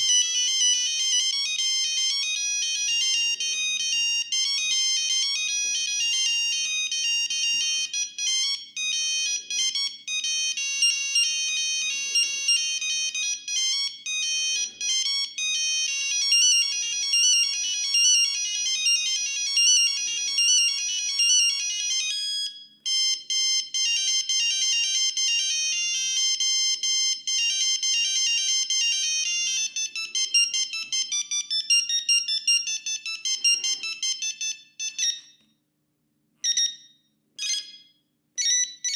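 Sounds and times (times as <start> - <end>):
mobile phone ringtone beeping: 0.0 - 35.4, 36.4 - 38.9.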